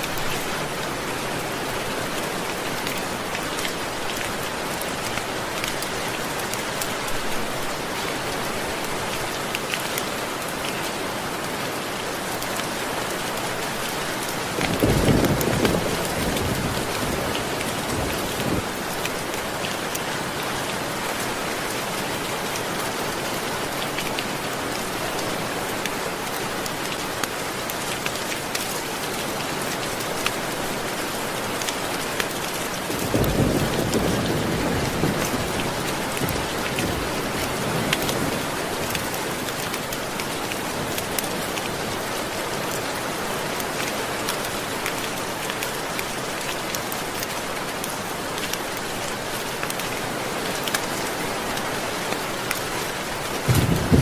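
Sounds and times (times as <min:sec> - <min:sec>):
steady rain: 0:00.0 - 0:54.0
thunder rumble: 0:53.5 - 0:54.0.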